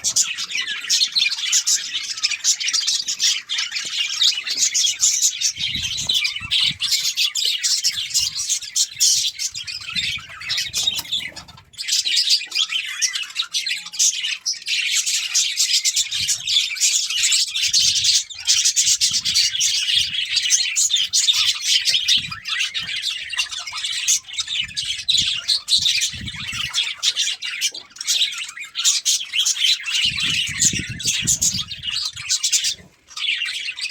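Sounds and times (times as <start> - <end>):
bird squawks: 0.0 - 33.9
budgerigars chirping: 0.0 - 33.9.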